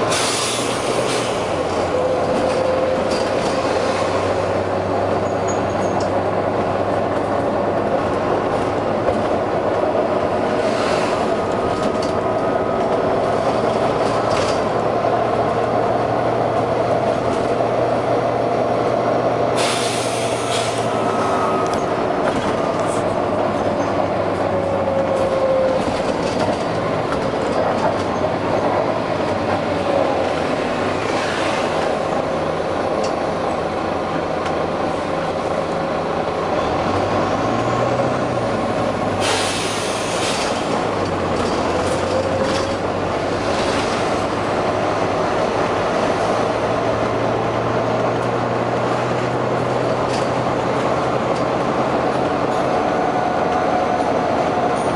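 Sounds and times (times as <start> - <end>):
bus diesel engine drone: 0.0 - 54.9
air hiss: 0.1 - 1.5, 19.6 - 20.9, 39.2 - 40.4.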